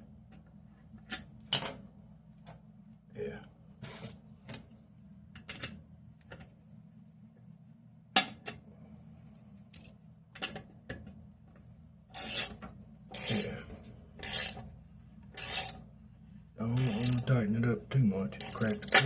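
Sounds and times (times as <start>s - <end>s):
ratchet clicking: 12.1s - 13.5s, 14.2s - 14.6s, 15.4s - 15.8s, 16.8s - 17.3s, 18.4s - 19.0s.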